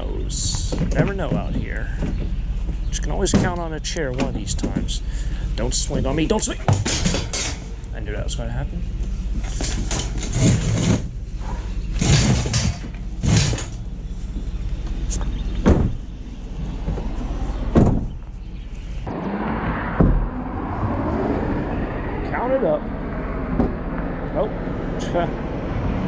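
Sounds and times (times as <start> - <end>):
steady low rumble: 0.0 - 26.0
sharp knocks and clatters: 6.5 - 7.9, 9.4 - 13.9, 15.2 - 16.1.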